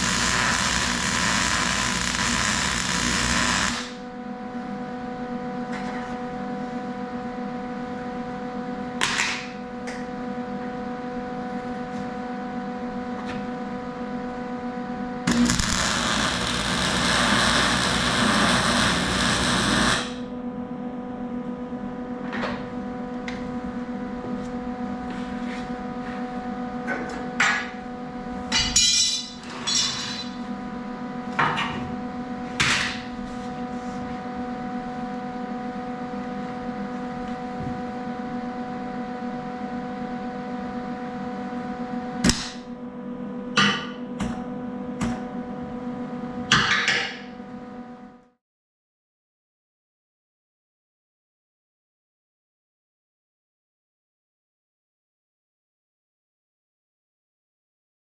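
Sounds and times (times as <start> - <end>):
machine humming: 0.0 - 4.4, 13.6 - 20.6.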